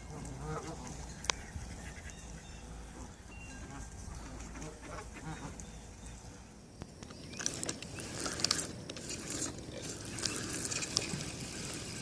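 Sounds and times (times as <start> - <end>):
geese calling: 0.0 - 6.5
water splashing: 7.4 - 12.0.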